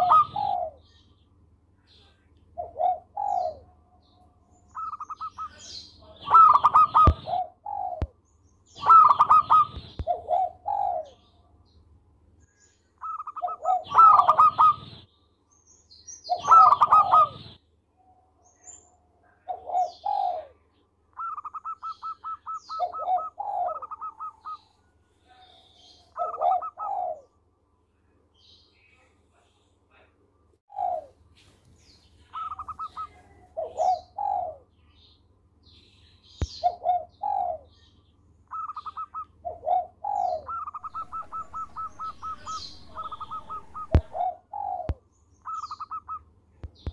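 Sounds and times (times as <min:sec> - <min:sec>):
dove cooing: 0:00.0 - 0:00.9, 0:02.6 - 0:03.7, 0:04.8 - 0:11.3, 0:13.0 - 0:15.0, 0:16.3 - 0:17.6, 0:19.4 - 0:20.6, 0:21.2 - 0:27.4, 0:30.7 - 0:31.2, 0:32.3 - 0:34.7, 0:36.5 - 0:37.8, 0:38.5 - 0:46.2.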